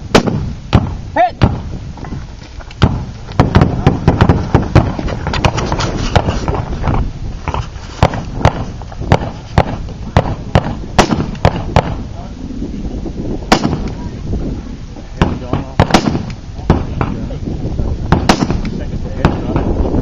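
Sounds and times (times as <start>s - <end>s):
gunshots with echo: 8.0s - 12.0s, 13.5s - 13.9s, 15.2s - 17.2s, 18.1s - 19.7s.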